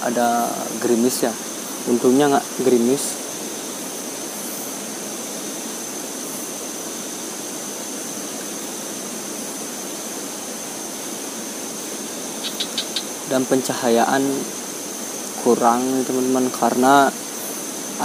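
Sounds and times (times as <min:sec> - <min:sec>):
river rushing: 0:00.0 - 0:18.0.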